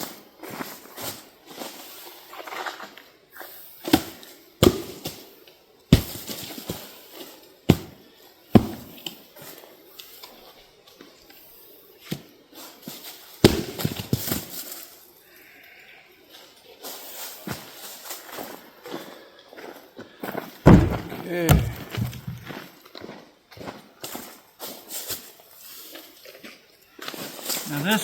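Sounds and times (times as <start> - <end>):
wood landing in wheelbarrow: 20.6 - 22.6
rustling and handling: 20.7 - 22.6.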